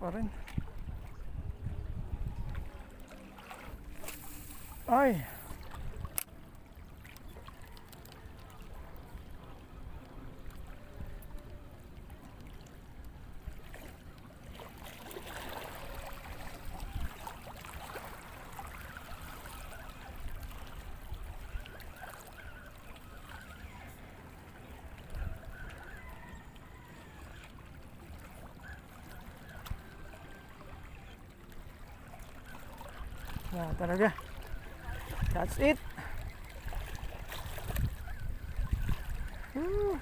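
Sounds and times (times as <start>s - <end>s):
wind on microphone: 0.2s - 3.0s, 33.0s - 40.0s
lapping water: 2.4s - 40.0s
faint distant calls: 13.6s - 40.0s.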